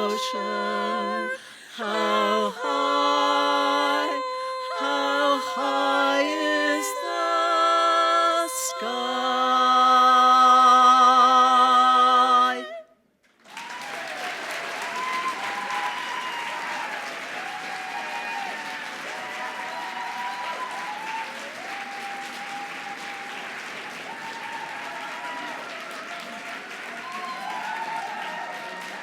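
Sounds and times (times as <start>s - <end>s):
people cheering: 0.0s - 10.1s, 13.4s - 29.0s
women singing a held chord: 0.0s - 12.9s
audience applauding: 13.3s - 29.0s.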